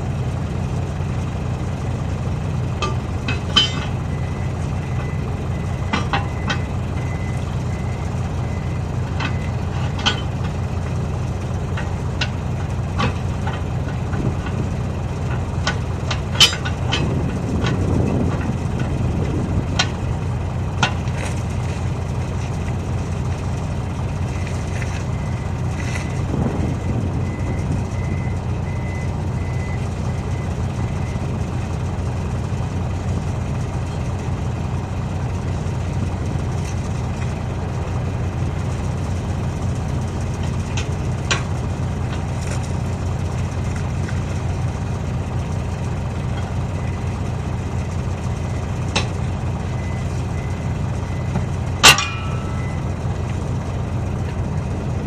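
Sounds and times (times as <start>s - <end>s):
heavy engine idling: 0.0s - 55.0s
metal knocks and clanks: 2.8s - 4.2s, 4.9s - 7.3s, 9.1s - 10.6s, 11.7s - 20.1s, 20.8s - 21.8s, 48.9s - 49.3s, 51.3s - 52.8s.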